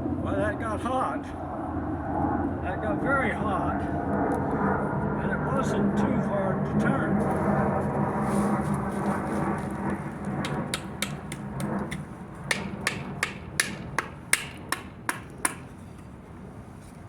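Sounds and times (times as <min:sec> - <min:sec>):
wooden stick tapping: 0:10.4 - 0:15.7.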